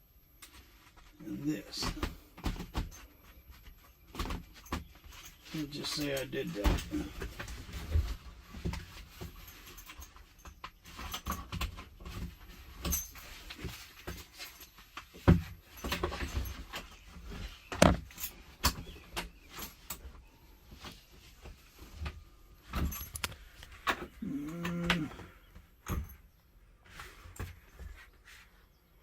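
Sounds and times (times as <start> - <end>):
loud thumps: 17.7 - 18.1
metal hardware clinking and clicking: 22.7 - 25.0.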